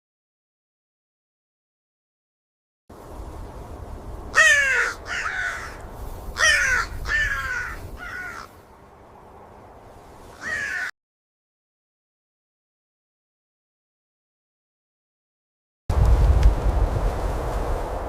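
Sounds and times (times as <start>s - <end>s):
crows cawing: 4.3s - 8.6s, 10.3s - 10.9s
low steady rumble: 15.9s - 18.0s.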